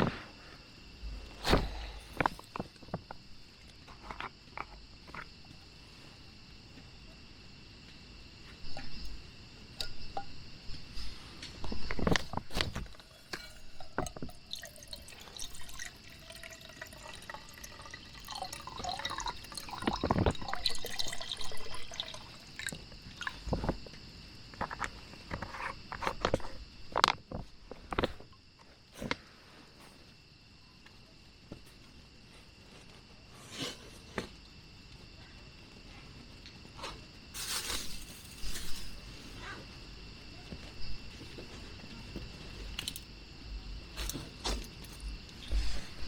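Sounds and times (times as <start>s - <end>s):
water dripping and splashing: 13.0s - 23.5s.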